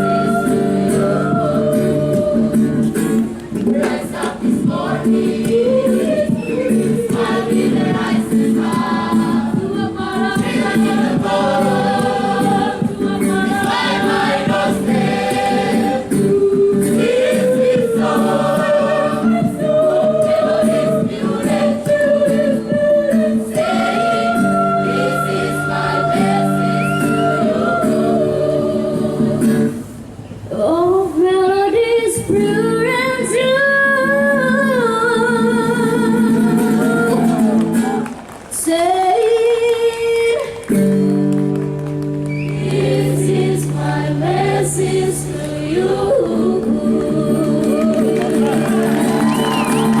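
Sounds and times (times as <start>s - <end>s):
choir singing in harmony: 0.0s - 3.0s, 3.6s - 30.0s, 42.6s - 50.0s.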